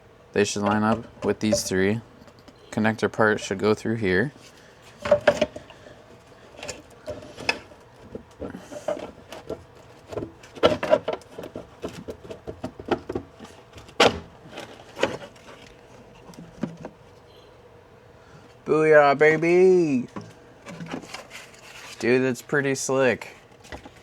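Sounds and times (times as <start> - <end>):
faint steady hum: 0.0 - 24.0
plastic parts clicking and knocking: 5.0 - 5.7, 6.6 - 17.0.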